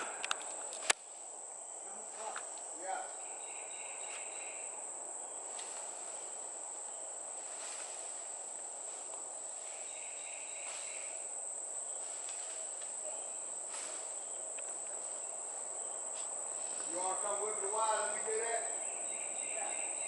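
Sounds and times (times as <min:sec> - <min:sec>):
insects droning high: 0:00.0 - 0:20.0
lower insect buzzing call: 0:00.0 - 0:20.0.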